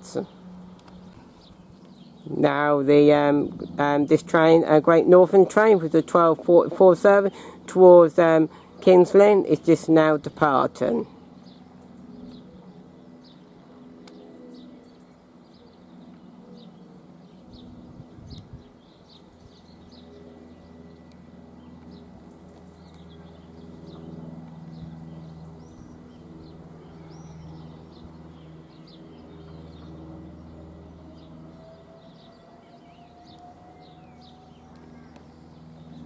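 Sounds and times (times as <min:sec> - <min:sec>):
small birds chirping: 0:00.0 - 0:06.4, 0:11.1 - 0:36.0
electric train hum: 0:20.6 - 0:36.0.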